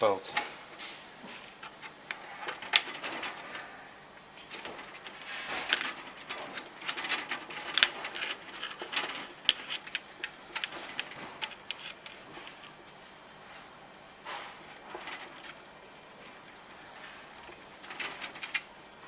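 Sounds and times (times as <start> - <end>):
allen key clicking and scraping metal: 1.6 - 13.4.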